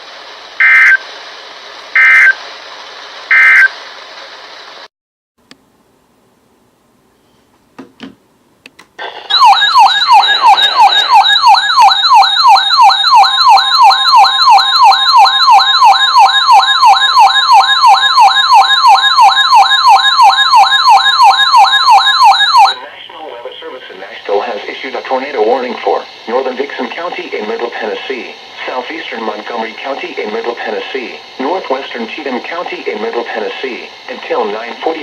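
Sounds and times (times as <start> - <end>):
short electronic blips: 0.6 - 1.0, 2.0 - 2.4, 3.3 - 3.8
siren-style electronic alarm: 0.6 - 1.1, 2.0 - 2.4, 3.3 - 3.8, 9.0 - 22.9.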